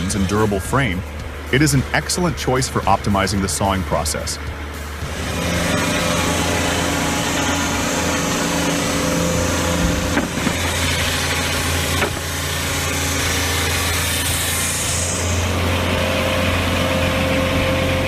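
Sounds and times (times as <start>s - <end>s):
petrol engine running: 0.0s - 18.0s.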